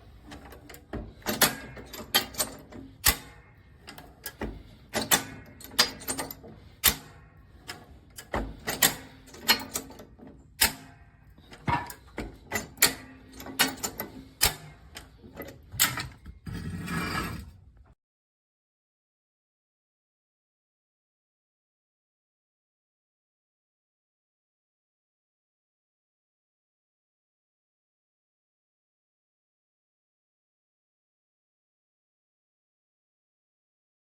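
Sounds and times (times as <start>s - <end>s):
metal jack clanking and clicking: 0.1s - 16.4s
metal scraping and rattling: 11.4s - 17.7s.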